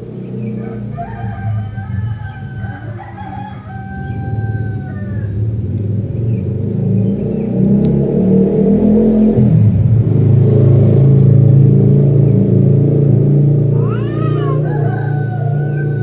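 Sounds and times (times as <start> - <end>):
vehicle engine rumble: 0.0 - 16.0
drawn-out animal call: 0.5 - 5.4, 13.6 - 16.0.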